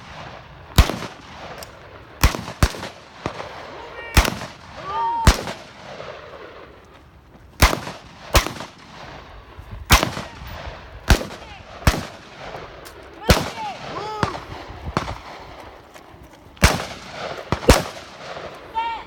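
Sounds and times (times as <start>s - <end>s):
rifle shots with echo: 0.0s - 6.8s, 7.6s - 19.0s.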